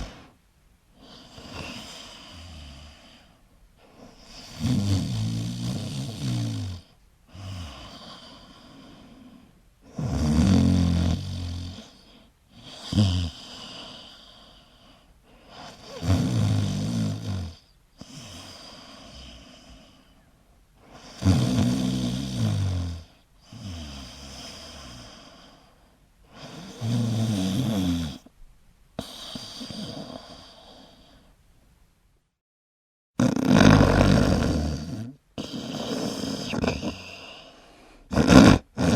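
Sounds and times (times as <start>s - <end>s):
person snoring: 0.0s - 0.3s, 3.9s - 14.3s, 15.5s - 20.0s, 21.0s - 25.6s, 26.3s - 28.3s, 29.0s - 31.2s, 33.2s - 38.9s
breathy breaths: 7.3s - 9.6s, 35.4s - 38.7s.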